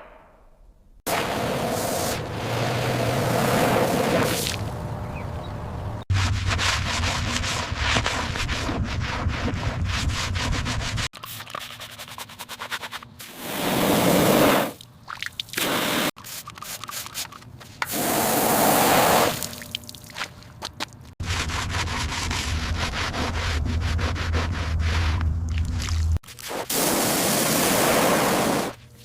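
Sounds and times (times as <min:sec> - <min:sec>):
sanding on car body: 0:06.1 - 0:11.1, 0:21.2 - 0:25.1.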